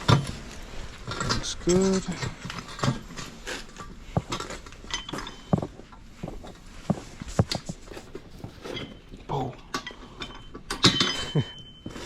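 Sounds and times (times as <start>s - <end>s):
metallic clinks of pipe fittings: 1.1s - 6.6s, 8.6s - 12.0s.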